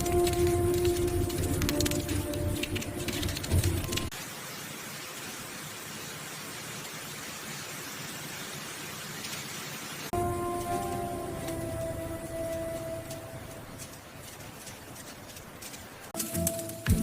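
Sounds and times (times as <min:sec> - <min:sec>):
music: 0:00.0 - 0:04.1, 0:10.2 - 0:13.4, 0:16.2 - 0:17.0
steady static hiss: 0:00.0 - 0:17.0.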